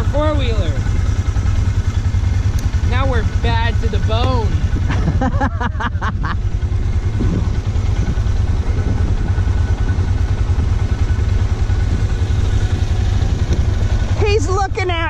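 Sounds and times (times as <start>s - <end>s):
atv engine rumbling: 0.0s - 15.0s.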